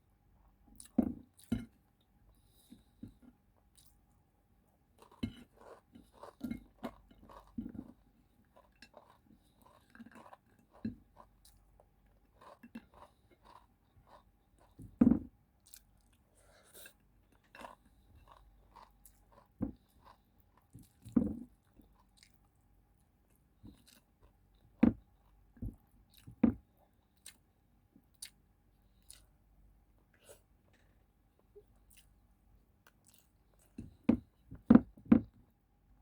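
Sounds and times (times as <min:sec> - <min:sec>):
crunchy chewing: 0:05.0 - 0:11.6, 0:12.3 - 0:15.0, 0:16.8 - 0:22.4.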